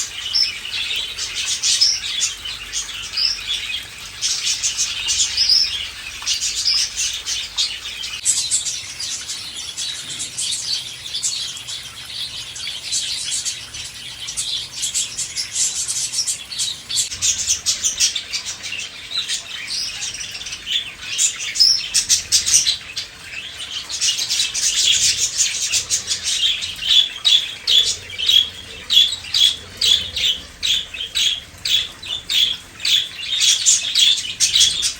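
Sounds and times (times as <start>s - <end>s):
small birds chirping: 0.0s - 34.9s.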